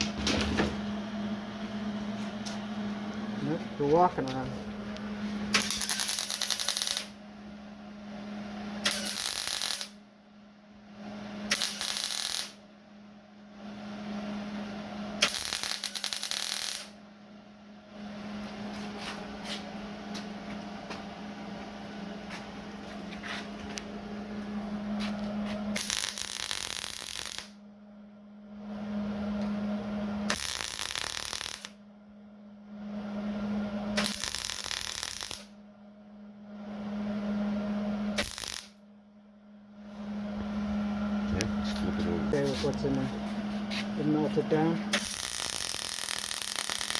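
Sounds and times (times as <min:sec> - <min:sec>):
steady hum: 0:00.0 - 0:46.9
welder arc crackling: 0:05.5 - 0:07.2, 0:08.8 - 0:10.0, 0:11.5 - 0:12.6, 0:15.2 - 0:17.0, 0:25.7 - 0:27.6, 0:30.3 - 0:31.8, 0:34.0 - 0:35.5, 0:38.2 - 0:38.8, 0:44.0 - 0:46.9.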